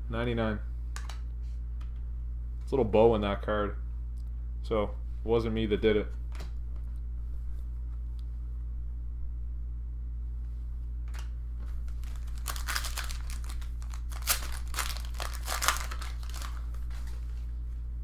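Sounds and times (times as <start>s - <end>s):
low electrical hum: 0.0s - 18.0s
foil wrapper crinkling: 11.9s - 17.3s.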